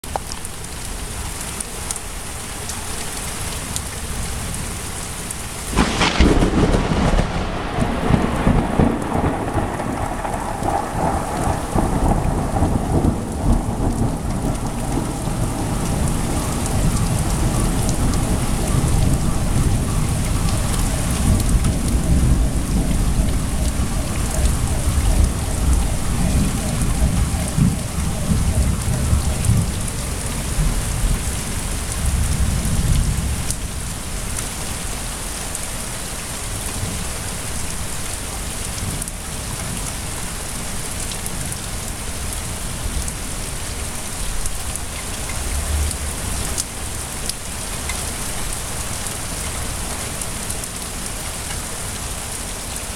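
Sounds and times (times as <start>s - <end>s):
steady rain: 0.0s - 52.9s
thunderclap rolling rumble: 5.7s - 34.0s.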